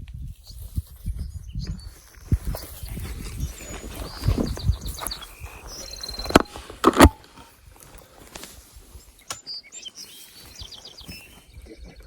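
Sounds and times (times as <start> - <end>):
small birds chirping: 0.2 - 12.0.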